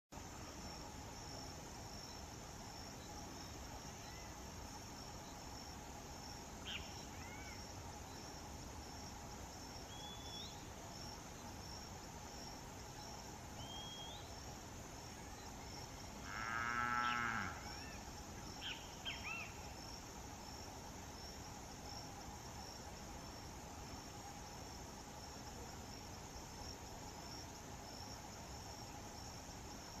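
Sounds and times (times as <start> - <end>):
insects chirping: 0.2 - 30.0
cow mooing: 16.3 - 17.6.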